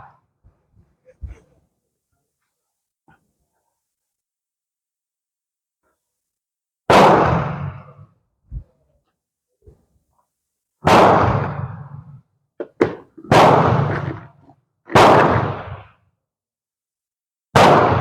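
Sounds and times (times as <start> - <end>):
rifle shots: 10.9 - 11.6, 12.7 - 14.3, 14.9 - 15.8, 17.6 - 18.0.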